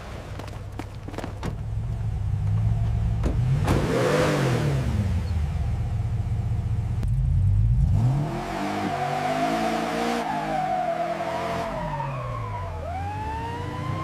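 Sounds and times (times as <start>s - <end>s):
car engine revving: 1.7s - 12.0s.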